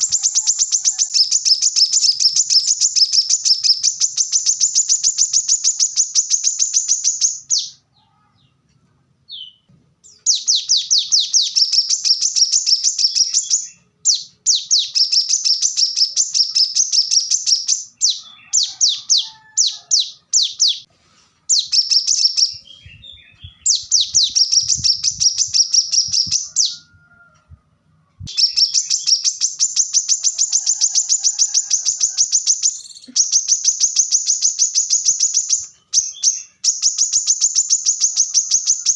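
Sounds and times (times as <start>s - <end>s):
bird singing high trills: 0.0s - 7.8s, 28.3s - 38.9s.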